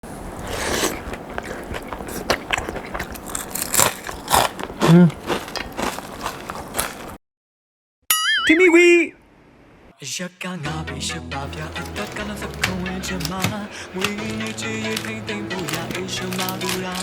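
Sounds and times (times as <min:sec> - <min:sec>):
crunching fried potato sticks: 0:00.1 - 0:07.2, 0:11.7 - 0:17.0.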